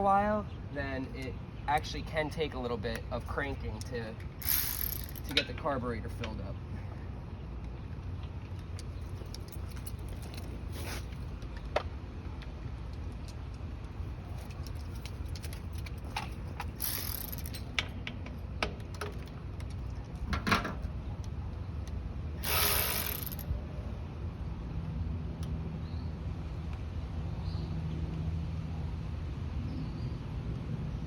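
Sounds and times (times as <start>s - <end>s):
hand tools clicking and tapping: 3.8s - 5.6s, 14.4s - 19.7s.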